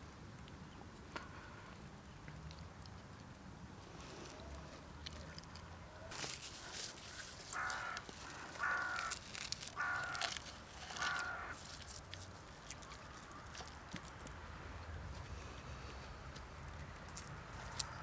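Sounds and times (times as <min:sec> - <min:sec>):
crow cawing: 0:06.6 - 0:11.8
sharp crackling clicks: 0:06.7 - 0:14.4.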